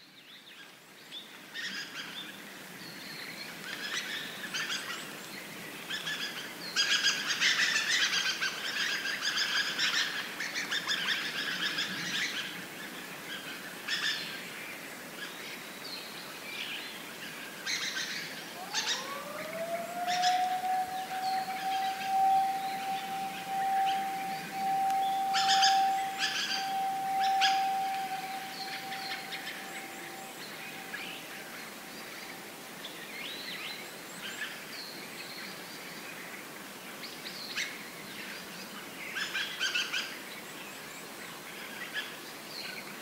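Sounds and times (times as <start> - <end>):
flock of thrushes calling: 18.5 - 32.4
rising steady tone: 18.6 - 32.4.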